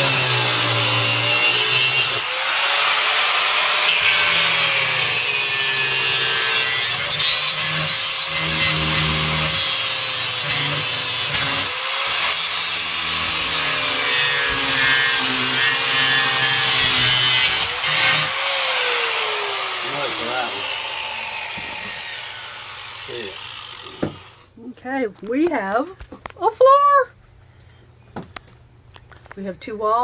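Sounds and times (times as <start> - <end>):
power tool motor whine: 0.0 - 7.2, 7.8 - 24.5
rasping of wood cutting: 0.0 - 24.4.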